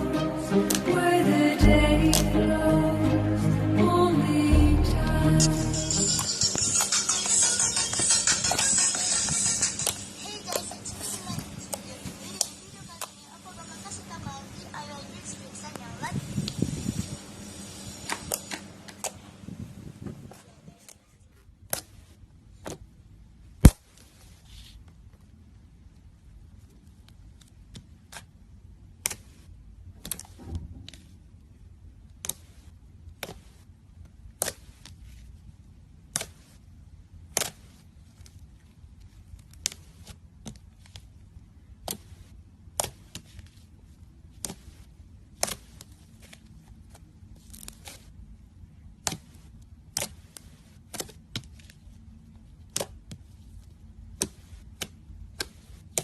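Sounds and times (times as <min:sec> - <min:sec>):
low steady hum: 0:00.0 - 0:56.0
slime popping and clicking: 0:02.1 - 0:02.4.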